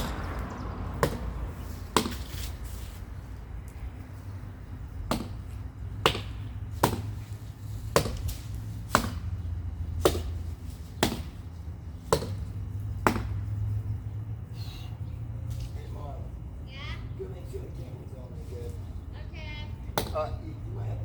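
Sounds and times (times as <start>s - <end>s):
low steady rumble: 0.0s - 21.0s
wood chopping blows: 1.9s - 2.4s, 7.9s - 9.3s.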